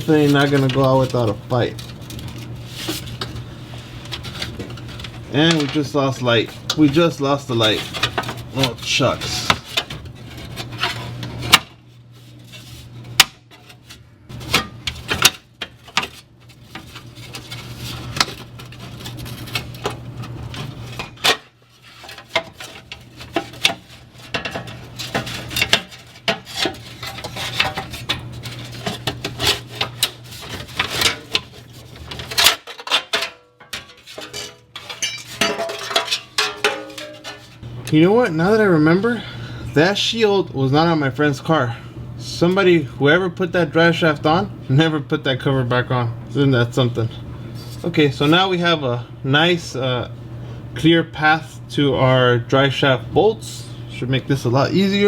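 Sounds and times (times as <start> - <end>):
metal shield clanking and scraping: 0.0 - 11.6, 12.4 - 37.6.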